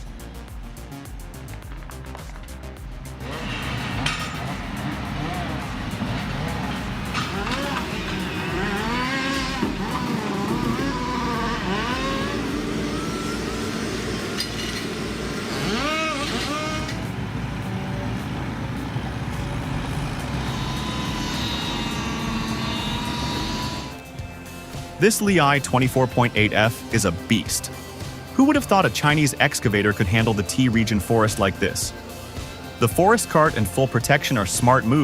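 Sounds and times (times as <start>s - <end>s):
diesel engine running: 0.0s - 35.0s
machinery whining and squealing: 3.2s - 29.4s.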